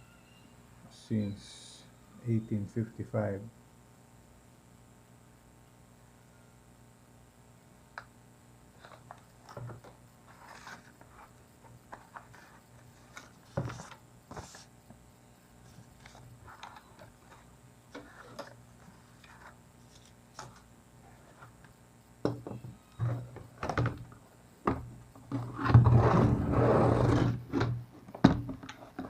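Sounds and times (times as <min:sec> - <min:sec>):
rustling scrape: 0:10.2 - 0:14.7, 0:25.4 - 0:27.4.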